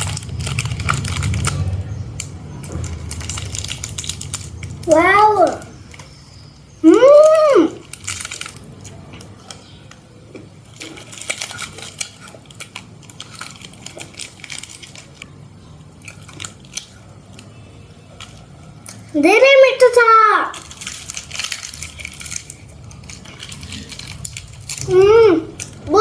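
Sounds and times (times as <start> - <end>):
sweet wrapper crinkling: 0.0 - 19.2, 20.5 - 26.0
quiet chewing: 5.6 - 19.1.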